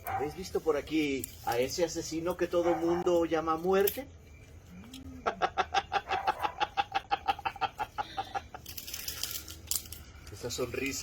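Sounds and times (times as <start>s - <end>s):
old man cackling laugh: 5.2s - 8.8s.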